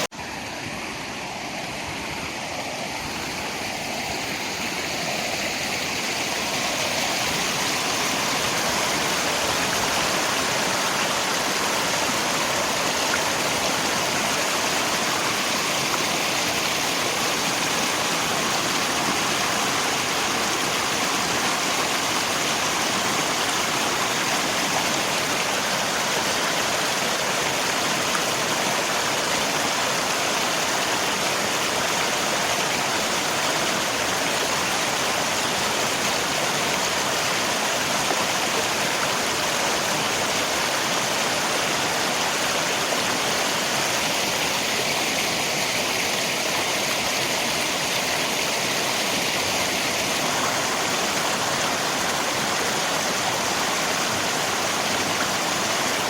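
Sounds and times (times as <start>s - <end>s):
rain: 0.0s - 56.0s
river flowing: 0.0s - 56.0s.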